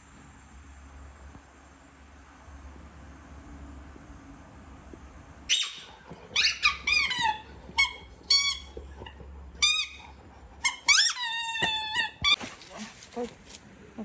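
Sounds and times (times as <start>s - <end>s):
dog yelping: 5.5s - 13.6s.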